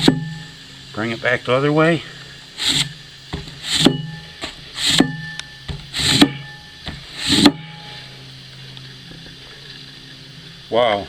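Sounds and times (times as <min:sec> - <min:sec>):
axe blade scraping cardboard: 0:02.6 - 0:07.8.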